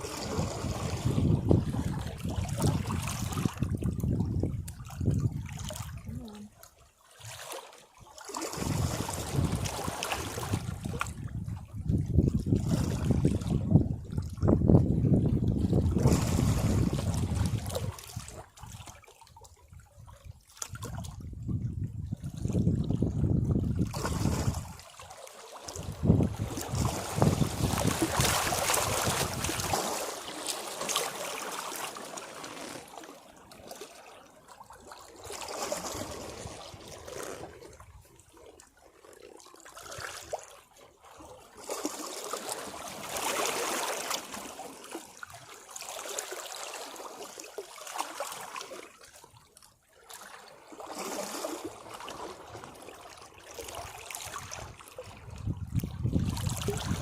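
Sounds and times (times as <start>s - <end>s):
sea waves washing against rocks: 25.7s - 33.1s.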